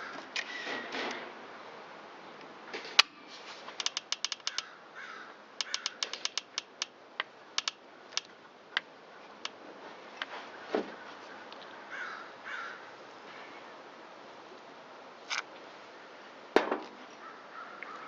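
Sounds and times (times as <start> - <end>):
ratchet wrench clicking: 3.8 - 4.7, 5.6 - 6.9, 7.6 - 8.3
crows cawing: 4.4 - 6.1, 11.9 - 12.9, 17.2 - 18.0.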